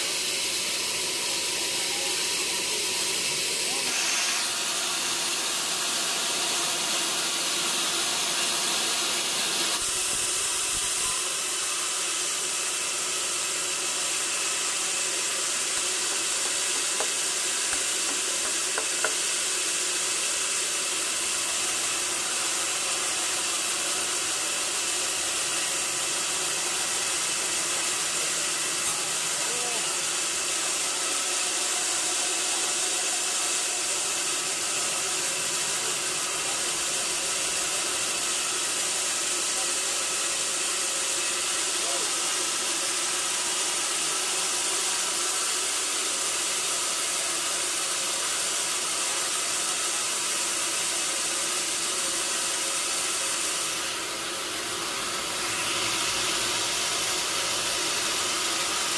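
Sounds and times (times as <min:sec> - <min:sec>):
sawmill saw hissing: 0:00.0 - 0:58.9.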